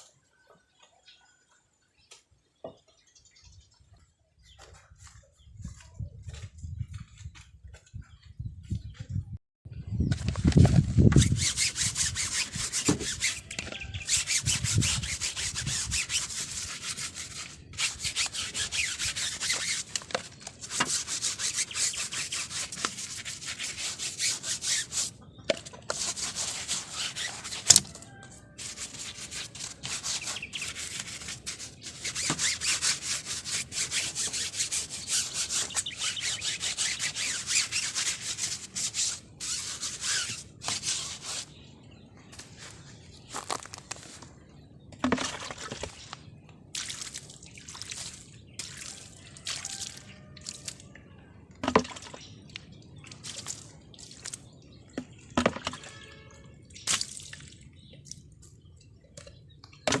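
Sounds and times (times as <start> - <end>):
sponge scrubbing car body: 11.2 - 25.2, 25.9 - 41.6.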